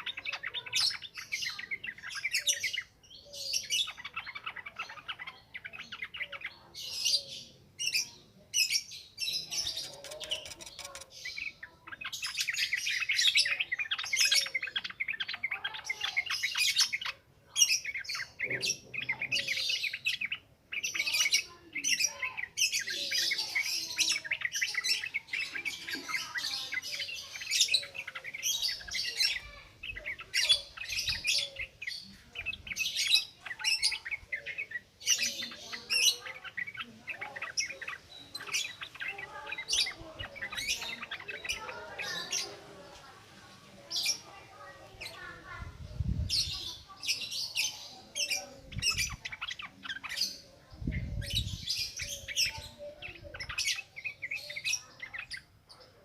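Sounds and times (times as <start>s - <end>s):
bulbul chattering song: 0.0s - 42.7s.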